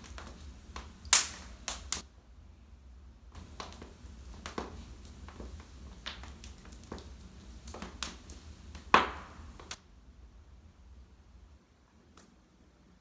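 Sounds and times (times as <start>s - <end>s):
wood fire crackling: 0.0s - 2.0s, 3.4s - 9.8s.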